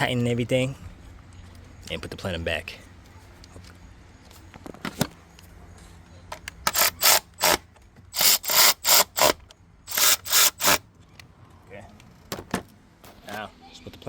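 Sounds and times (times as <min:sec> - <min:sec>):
hand ratchet clicking: 0:06.7 - 0:07.6, 0:08.2 - 0:10.8.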